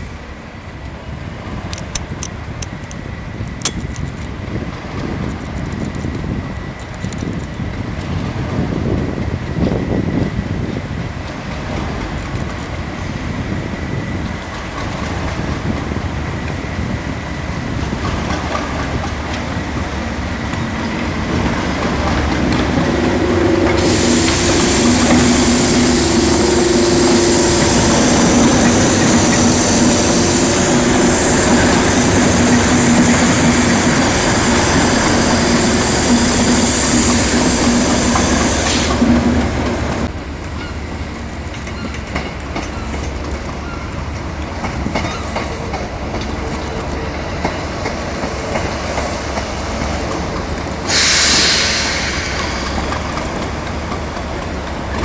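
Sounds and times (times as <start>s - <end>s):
train passing on rails: 0.0s - 55.0s
short burst of hiss: 23.8s - 39.1s, 50.8s - 53.4s.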